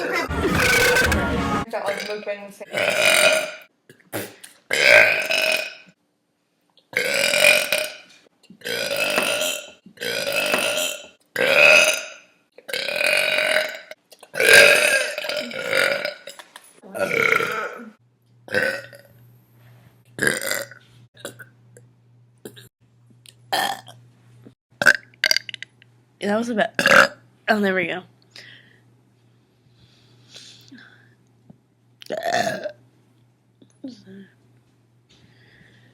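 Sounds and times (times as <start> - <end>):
girl burping: 1.9 - 3.6, 14.4 - 16.2, 16.9 - 18.9.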